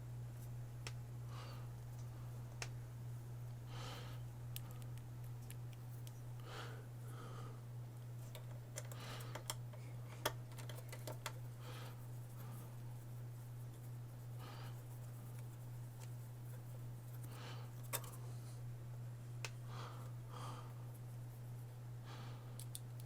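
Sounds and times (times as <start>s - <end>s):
steady low hum: 0.0s - 23.0s
small clicks and taps of parts: 8.2s - 11.4s, 22.6s - 23.0s.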